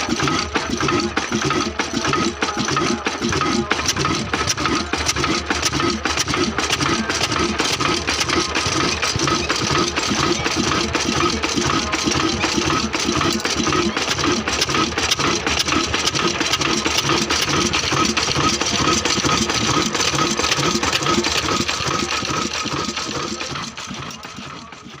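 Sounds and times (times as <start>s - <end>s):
stationary diesel engine running: 0.0s - 25.0s.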